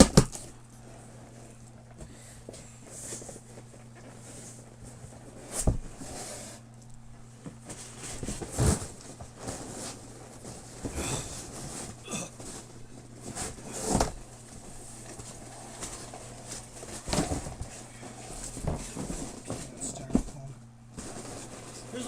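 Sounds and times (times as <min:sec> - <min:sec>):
low electrical hum: 0:00.0 - 0:22.0.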